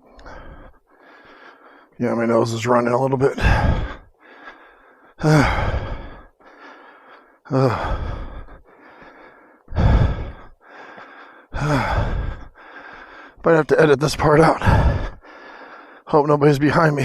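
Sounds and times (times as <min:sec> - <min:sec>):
man breathing hard: 0:00.0 - 0:02.0, 0:03.4 - 0:16.1
man groaning: 0:05.2 - 0:06.0.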